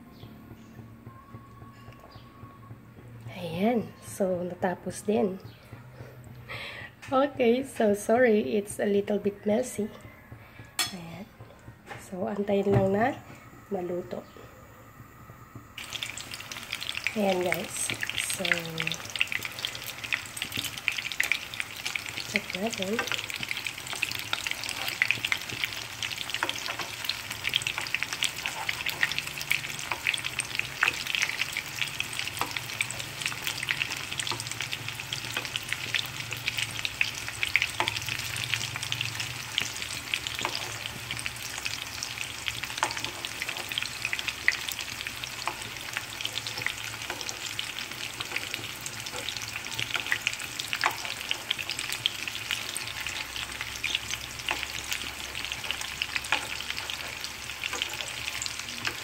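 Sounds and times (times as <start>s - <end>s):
eggplant frying in hot oil: 15.7s - 59.0s.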